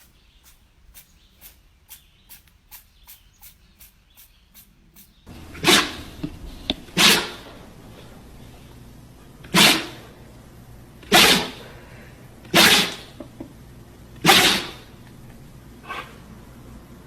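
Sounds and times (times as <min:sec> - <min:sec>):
pet sneezing: 0:05.5 - 0:06.2, 0:06.9 - 0:08.1, 0:09.4 - 0:10.1, 0:11.0 - 0:13.2, 0:14.2 - 0:14.9, 0:15.8 - 0:16.2.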